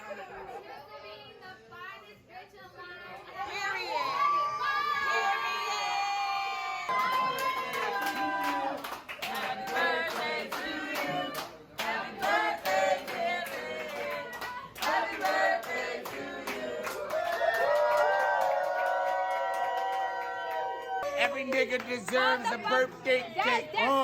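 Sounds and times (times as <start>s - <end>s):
hand claps: 6.9s - 16.2s
group of voices singing: 7.0s - 17.2s.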